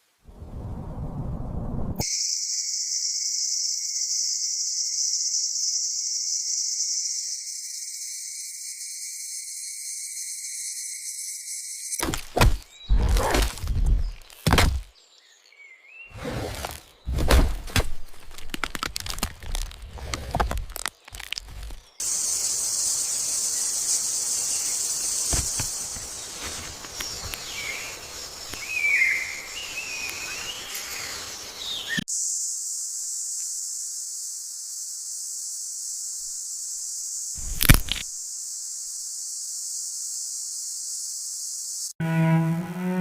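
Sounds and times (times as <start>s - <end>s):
high-pitched insect drone: 2.0s - 12.0s, 21.2s - 26.4s, 27.1s - 42.0s
wavering whistled calls: 2.0s - 12.0s, 27.1s - 32.0s
rustling noise: 16.2s - 21.9s, 25.2s - 28.2s.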